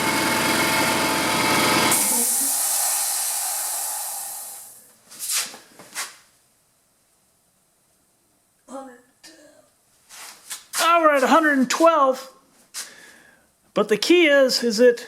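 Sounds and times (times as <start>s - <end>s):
air compressor running: 0.0s - 4.8s
valve hissing: 1.9s - 4.8s.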